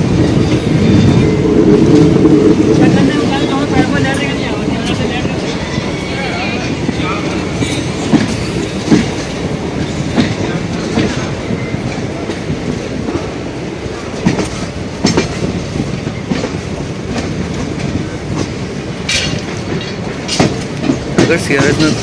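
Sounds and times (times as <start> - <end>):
train rolling rumble: 0.0 - 22.0
wheels clicking over rail joints: 16.3 - 22.0.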